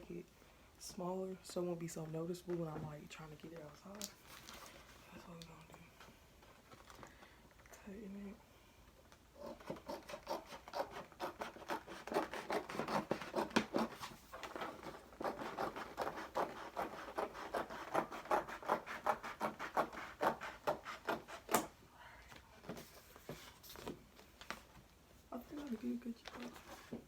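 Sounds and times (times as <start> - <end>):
scissors cutting poster board: 9.4 - 21.7.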